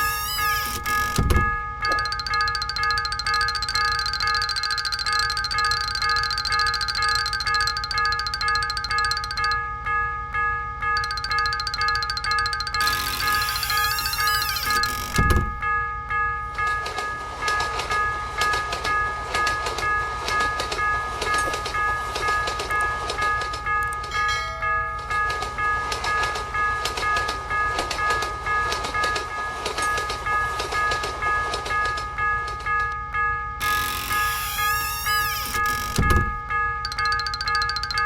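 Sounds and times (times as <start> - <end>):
crossing warning bell ringing: 0.0 - 38.0
train wheels clattering: 16.6 - 24.3, 24.9 - 32.9.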